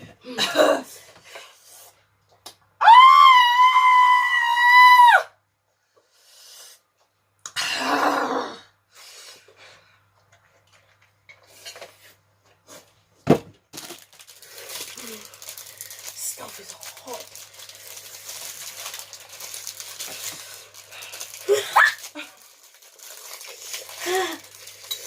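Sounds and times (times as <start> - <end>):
woman's high-pitched squeal: 2.8 - 5.3, 21.5 - 22.3.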